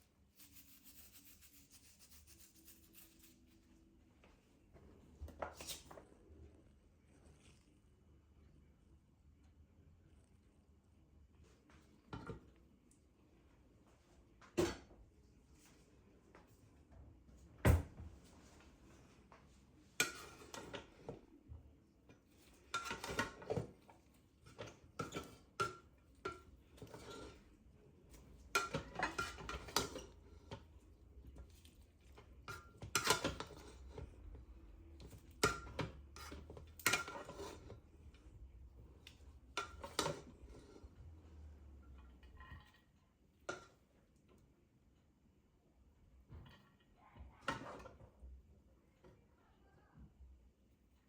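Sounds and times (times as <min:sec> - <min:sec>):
dishes and cutlery clinking: 0:20.0 - 0:21.2, 0:22.5 - 0:23.8, 0:24.5 - 0:27.5, 0:28.4 - 0:30.7, 0:31.6 - 0:34.1, 0:35.0 - 0:37.8.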